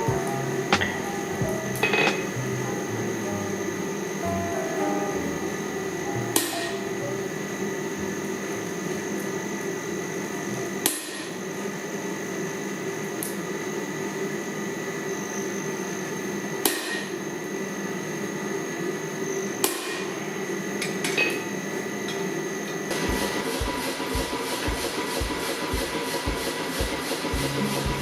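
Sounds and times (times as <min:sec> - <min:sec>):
hammer striking steel anvil: 0:00.7 - 0:02.3.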